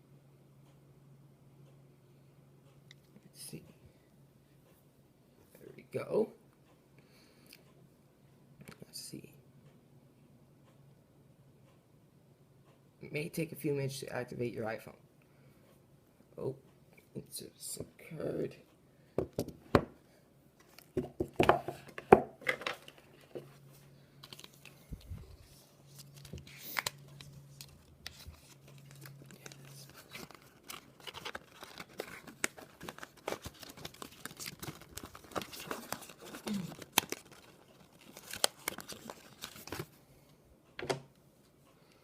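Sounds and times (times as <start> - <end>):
packaging torn and crinkled: 25.9 - 39.9.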